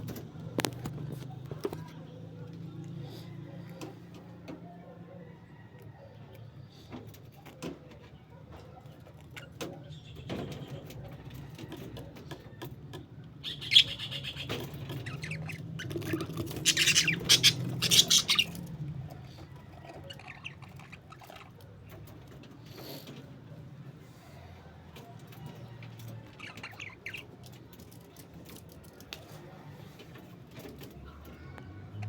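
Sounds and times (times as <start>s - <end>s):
parakeets chirping and squawking: 8.9s - 10.2s, 13.4s - 23.2s, 25.3s - 28.7s
small clicks and rustles: 24.8s - 32.0s.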